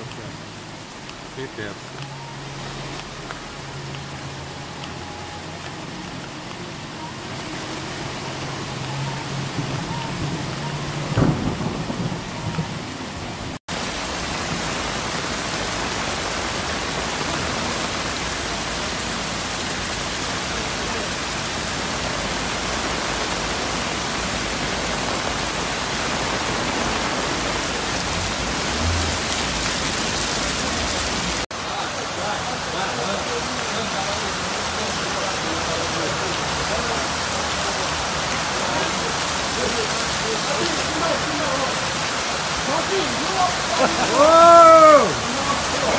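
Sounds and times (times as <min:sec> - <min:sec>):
heavy rain pouring: 0:00.0 - 0:45.9
sudden thump: 0:09.5 - 0:13.0.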